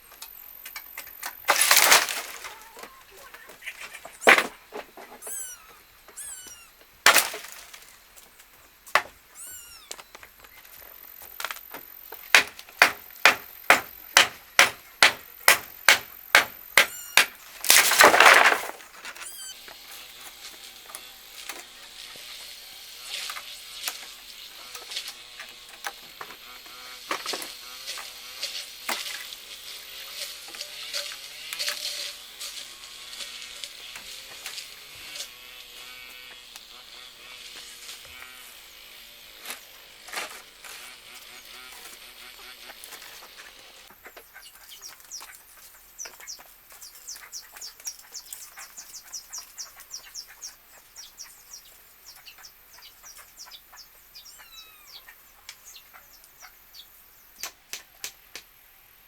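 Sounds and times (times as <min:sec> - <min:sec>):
crash of something breaking apart: 0:01.5 - 0:02.7, 0:07.1 - 0:07.9, 0:17.2 - 0:18.9
tool striking hard: 0:12.3 - 0:17.4.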